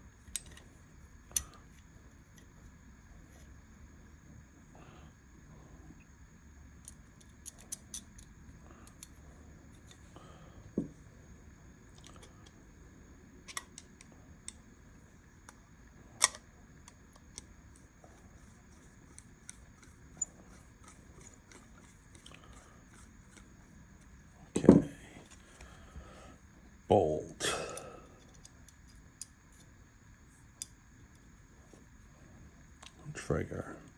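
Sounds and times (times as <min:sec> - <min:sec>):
metal parts clicking and tapping: 0:00.3 - 0:00.6.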